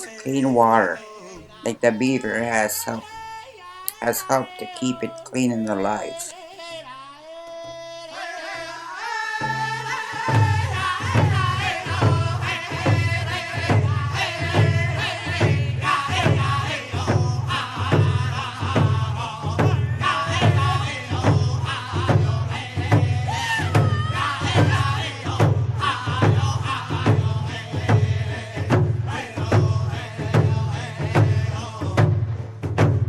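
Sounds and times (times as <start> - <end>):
steady low drumbeat: 9.4 - 33.0.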